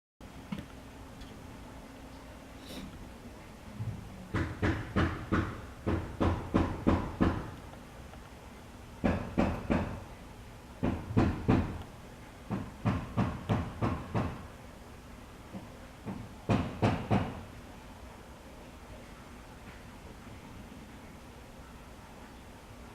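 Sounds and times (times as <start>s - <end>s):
repeated short knocks: 3.8s - 7.6s, 9.0s - 10.0s, 10.8s - 11.8s, 12.5s - 14.5s, 15.5s - 17.5s.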